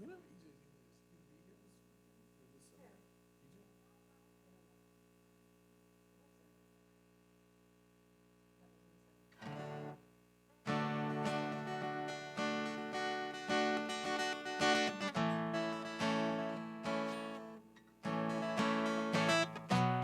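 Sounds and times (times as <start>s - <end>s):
acoustic guitar strumming chords: 9.4s - 10.0s, 10.6s - 20.0s.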